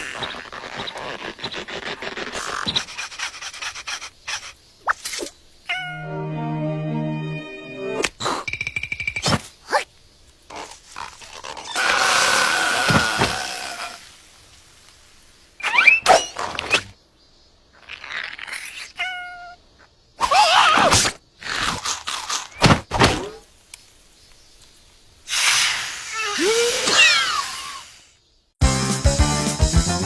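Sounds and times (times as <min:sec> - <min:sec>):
cartoon squeaky cries: 0:26.1 - 0:27.9.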